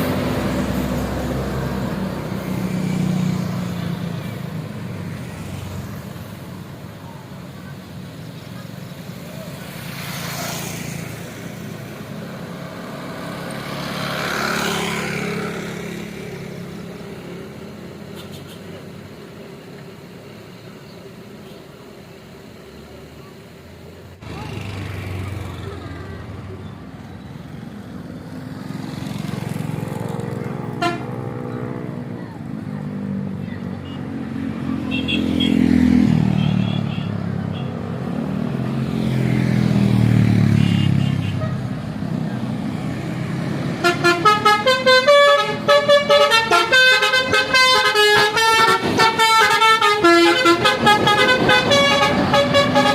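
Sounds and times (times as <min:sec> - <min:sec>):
vehicle passing by: 0:00.0 - 0:06.5, 0:09.0 - 0:17.6, 0:24.2 - 0:44.4.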